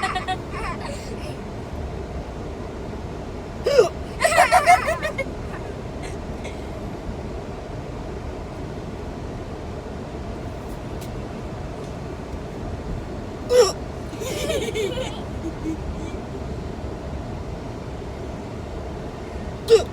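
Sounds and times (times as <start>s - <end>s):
steady background noise: 0.0s - 19.9s
person hiccuping: 3.7s - 4.2s, 13.5s - 13.8s, 19.7s - 19.9s.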